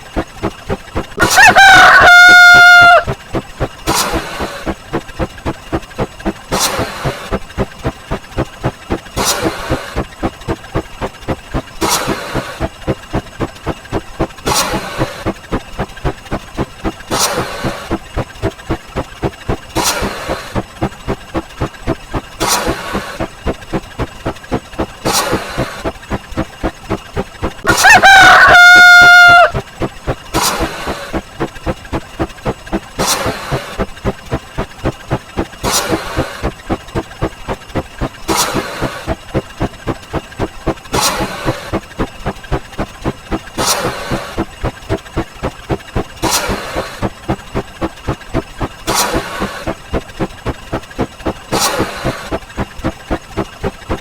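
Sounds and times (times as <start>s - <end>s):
fast steady ticking: 0.0s - 54.0s
longer noisy sound effect: 0.0s - 54.0s
rooster crowing: 1.2s - 3.1s, 27.7s - 29.6s
short swishes: 3.0s - 28.0s, 29.6s - 54.0s.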